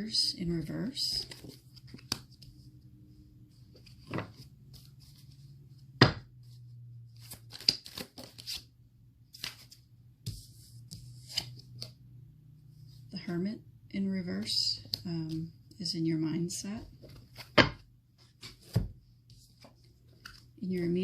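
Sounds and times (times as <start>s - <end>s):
cards clicking and slapping: 1.2s - 2.5s, 7.2s - 8.6s.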